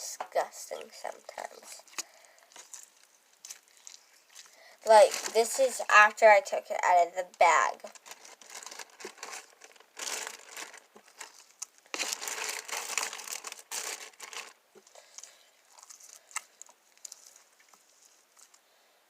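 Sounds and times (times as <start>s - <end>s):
plastic bag crinkling: 1.0s - 6.2s, 7.5s - 18.6s.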